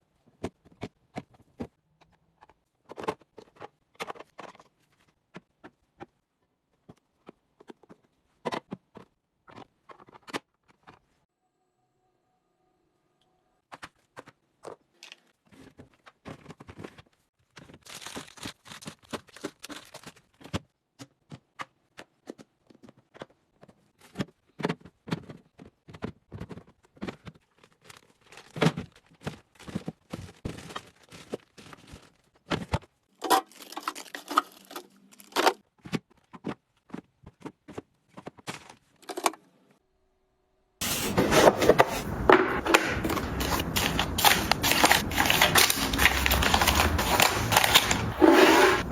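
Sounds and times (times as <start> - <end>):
plastic crinkling: 41.1 - 48.9.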